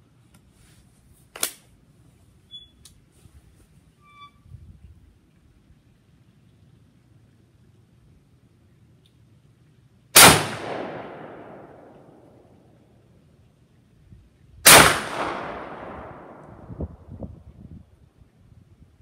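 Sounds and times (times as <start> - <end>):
shotgun gunshots with echo: 10.2 - 11.9, 14.7 - 16.4.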